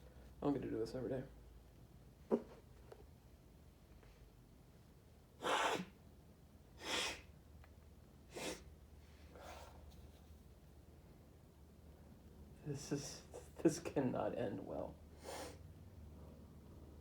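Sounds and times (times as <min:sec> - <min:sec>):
man sniffing through the nose: 0:05.4 - 0:06.0, 0:06.8 - 0:07.3, 0:08.3 - 0:08.7, 0:15.2 - 0:15.6.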